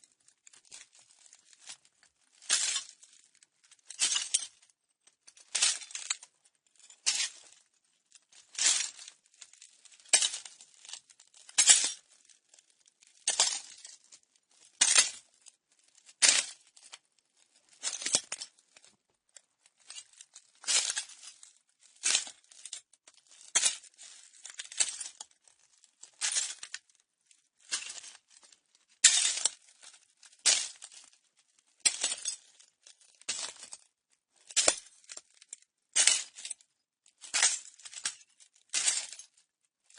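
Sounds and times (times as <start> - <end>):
footsteps crunching on broken glass: 0.5 - 3.1, 3.9 - 4.5, 6.8 - 7.6, 8.4 - 14.0, 14.6 - 19.0, 19.7 - 26.9, 27.6 - 31.1, 31.8 - 33.8, 34.4 - 36.6, 37.2 - 39.4.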